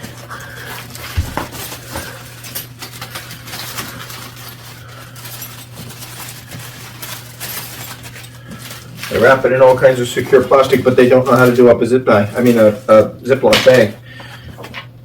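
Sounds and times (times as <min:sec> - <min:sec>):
plastic bag crinkling: 0:00.0 - 0:14.8
metal tools clinking: 0:05.2 - 0:11.6.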